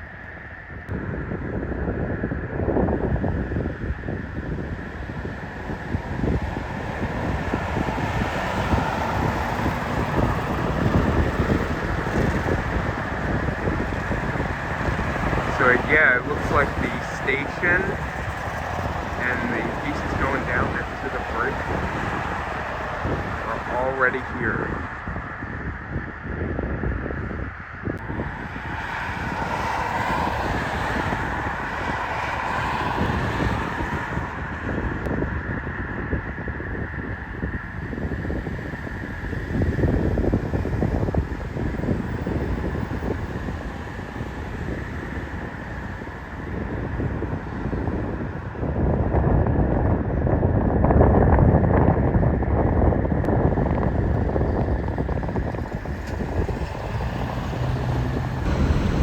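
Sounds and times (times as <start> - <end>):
road traffic: 0.0 - 59.0
wind buffeting microphone: 0.0 - 59.0.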